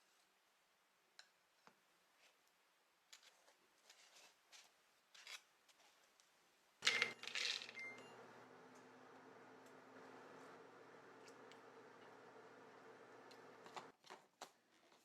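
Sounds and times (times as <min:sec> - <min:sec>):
kitchen items clicking: 0:06.8 - 0:08.0
kitchen items clattering: 0:06.8 - 0:09.0
low hum: 0:07.8 - 0:13.9.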